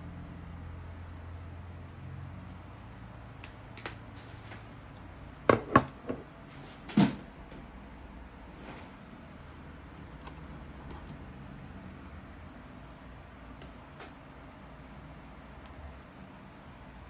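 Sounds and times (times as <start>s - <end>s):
hard objects knocking: 5.5s - 6.3s.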